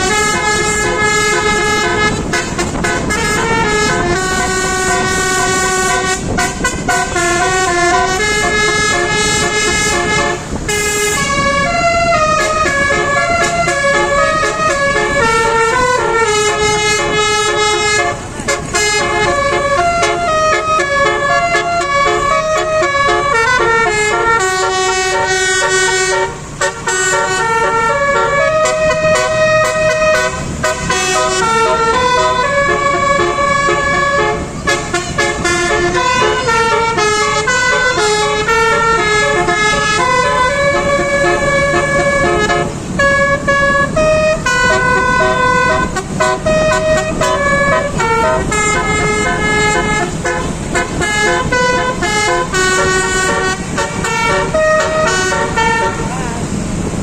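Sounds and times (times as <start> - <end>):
multi-trumpet air horn melody: 0.0 - 56.5.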